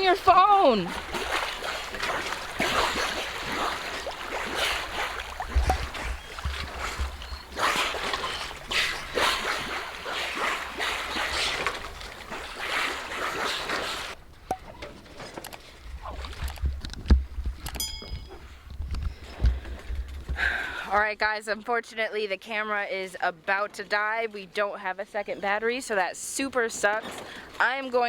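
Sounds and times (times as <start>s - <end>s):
wind buffeting microphone: 0.0s - 12.4s
water splashing along boat hull: 0.0s - 20.9s, 25.4s - 28.0s.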